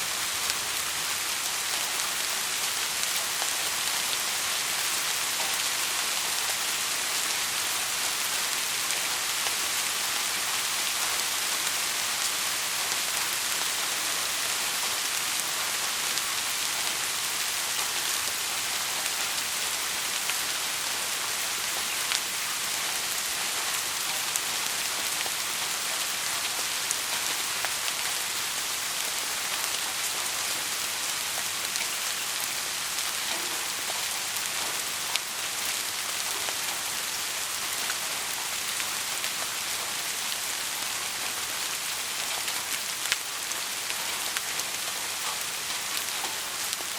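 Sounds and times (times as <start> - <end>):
heavy rain pattering: 0.0 - 46.9.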